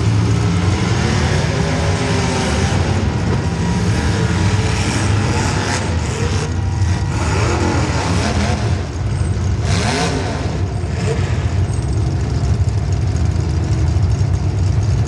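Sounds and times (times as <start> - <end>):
car engine revving hard: 0.0 - 11.6.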